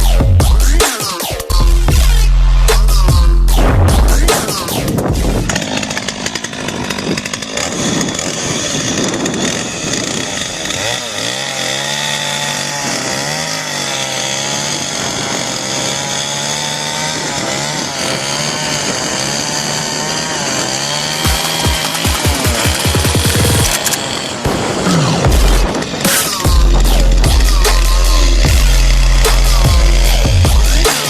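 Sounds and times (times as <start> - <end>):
chainsaw engine running: 0.0 - 31.0.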